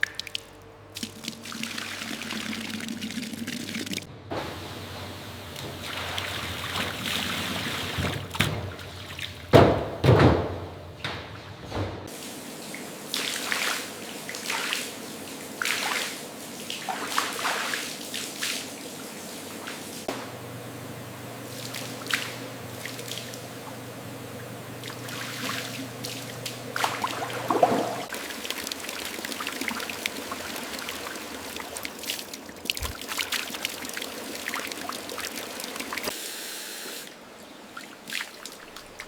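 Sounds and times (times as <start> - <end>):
liquid trickling and splashing: 0.0 - 4.1, 12.2 - 20.1, 21.4 - 36.1, 37.3 - 39.0
low background hum: 0.0 - 36.1.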